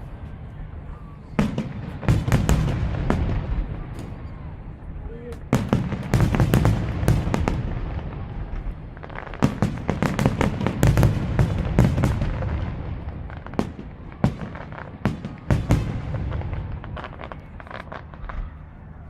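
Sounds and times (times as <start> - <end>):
fireworks bangs: 0.0 - 19.0.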